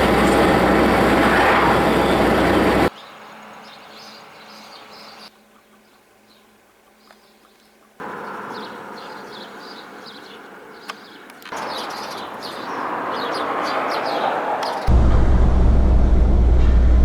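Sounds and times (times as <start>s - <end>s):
small birds chirping: 0.0s - 14.9s
noisy outdoor background: 0.0s - 17.0s
loud low rumble: 14.9s - 17.0s.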